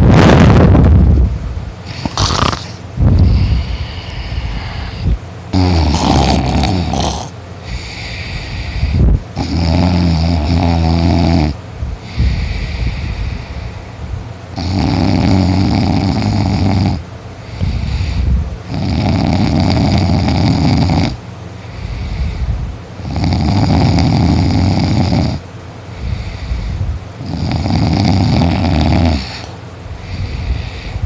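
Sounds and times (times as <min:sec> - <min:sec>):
person snoring loudly: 0:01.8 - 0:13.6, 0:14.5 - 0:25.4, 0:26.0 - 0:31.0
quiet breaths: 0:01.9 - 0:05.2, 0:07.6 - 0:09.3, 0:12.0 - 0:14.1, 0:17.4 - 0:18.5, 0:21.6 - 0:22.7, 0:25.9 - 0:27.8, 0:28.9 - 0:31.0.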